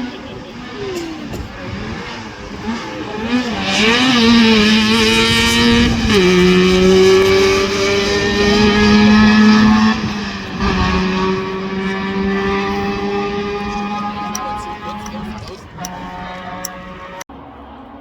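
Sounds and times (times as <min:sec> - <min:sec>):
rally car engine at high revs: 0:00.0 - 0:17.3.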